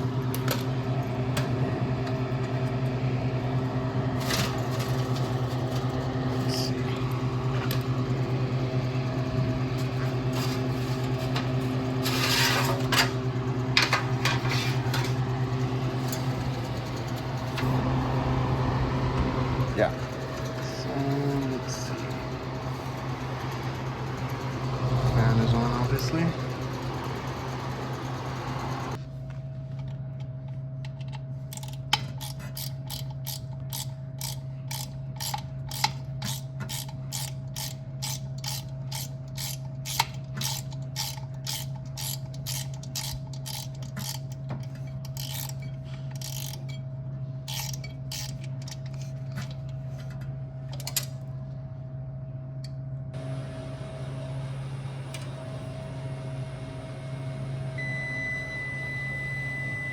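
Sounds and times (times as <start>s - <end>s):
fan motor hum: 0.0s - 59.9s
ratcheting hand tool clicking: 31.5s - 44.4s, 45.0s - 46.8s, 47.5s - 49.0s.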